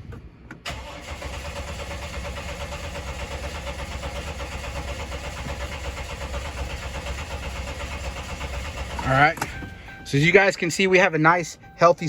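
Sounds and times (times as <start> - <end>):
engine cranking on starter: 0.6 - 9.7.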